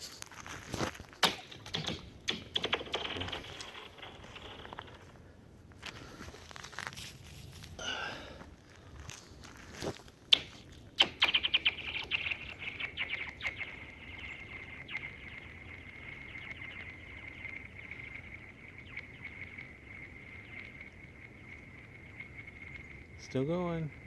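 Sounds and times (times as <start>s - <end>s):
rock skidding across ice pinging: 0.0s - 5.2s.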